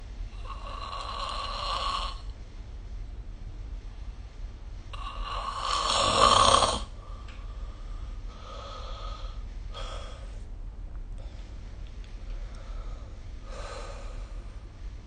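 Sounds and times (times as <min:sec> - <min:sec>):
person snoring loudly: 0:00.4 - 0:02.2, 0:05.0 - 0:06.9
quiet breathing: 0:04.9 - 0:10.5, 0:11.1 - 0:15.0.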